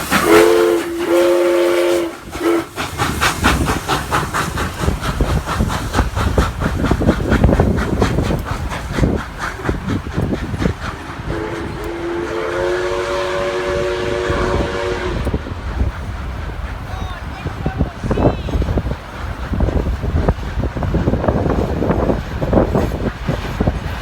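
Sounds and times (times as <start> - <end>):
steam locomotive exhaust chuffs: 0.0 - 24.0
multi-note train whistle: 0.2 - 2.6, 11.3 - 15.4.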